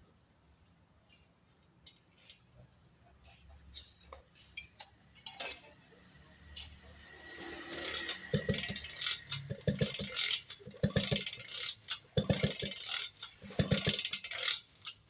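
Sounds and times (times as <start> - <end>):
scrap iron parts clanking: 7.4 - 15.0.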